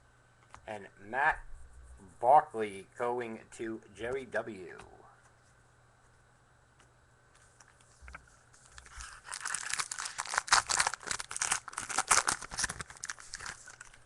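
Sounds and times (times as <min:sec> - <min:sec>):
foil wrapper tearing and crinkling: 0:08.7 - 0:14.0.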